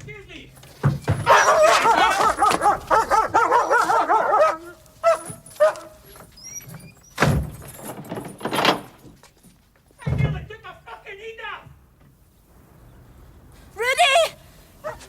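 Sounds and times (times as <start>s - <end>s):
dog barking excitedly: 1.1s - 6.2s.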